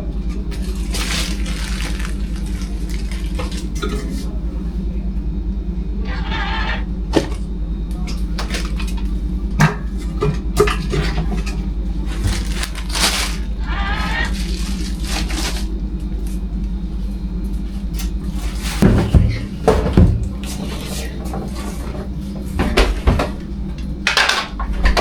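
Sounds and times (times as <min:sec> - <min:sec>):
low machine hum: 0:00.0 - 0:25.0
dishes and utensils clattering: 0:03.4 - 0:04.3.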